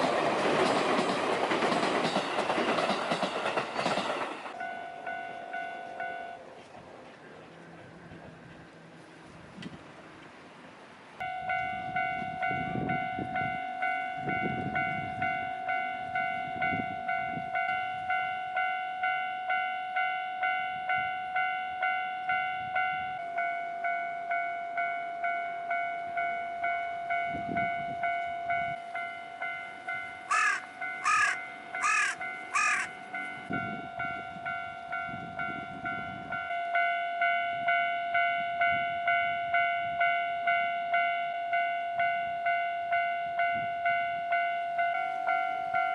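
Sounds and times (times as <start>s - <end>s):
level-crossing bell clanging: 0.0s - 6.5s, 11.2s - 45.9s
crow cawing: 30.3s - 32.9s.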